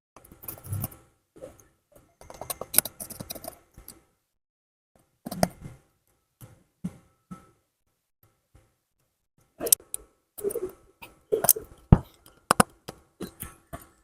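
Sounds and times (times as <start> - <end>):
small parts clicking and tapping: 2.1 - 4.1, 11.4 - 14.0.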